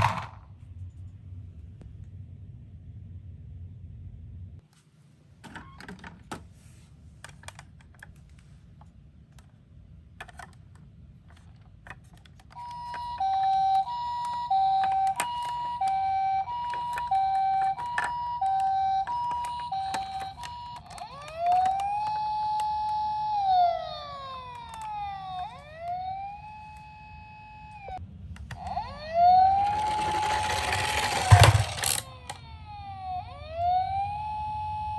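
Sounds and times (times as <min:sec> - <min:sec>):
plastic clicks: 0:10.2 - 0:23.0, 0:24.4 - 0:26.0, 0:29.6 - 0:32.4
toy electronic siren: 0:12.5 - 0:34.9.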